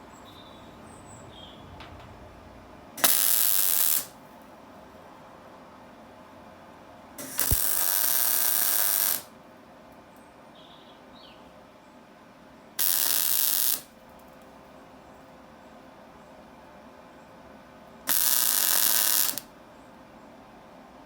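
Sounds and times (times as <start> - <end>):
welding arc striking click: 3.0 - 4.1, 7.2 - 9.3, 12.8 - 13.9, 18.1 - 19.5
welding arc hissing: 3.0 - 4.2, 7.2 - 9.3, 12.8 - 13.9, 18.1 - 19.5.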